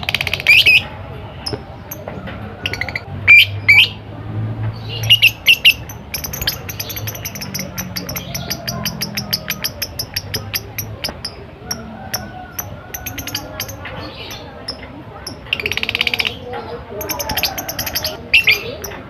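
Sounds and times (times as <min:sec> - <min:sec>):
lovebird chattering chirps: 0:04.9 - 0:16.4, 0:17.0 - 0:19.0.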